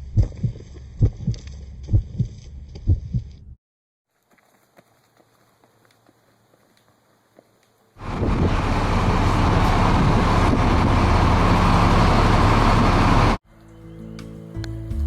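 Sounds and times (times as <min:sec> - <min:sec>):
loud rushing noise: 0:08.0 - 0:13.4
low hum: 0:08.0 - 0:13.4.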